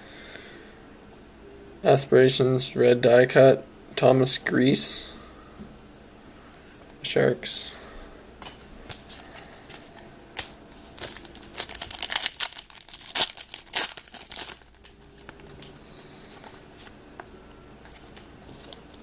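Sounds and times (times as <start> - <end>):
wrapper crinkling and tearing: 10.4 - 15.6.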